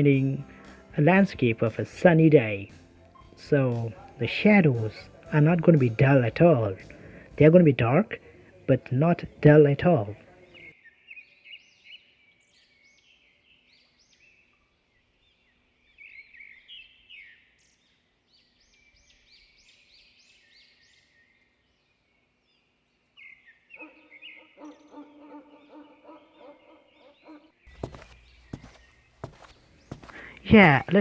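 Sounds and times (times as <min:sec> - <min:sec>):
small birds chirping: 0:08.2 - 0:31.0
larger bird repeated call: 0:23.8 - 0:27.6.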